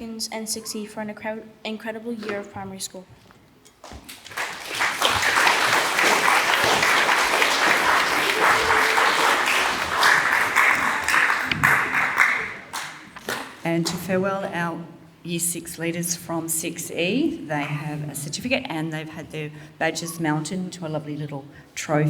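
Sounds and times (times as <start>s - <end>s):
audience clapping: 4.0s - 13.7s.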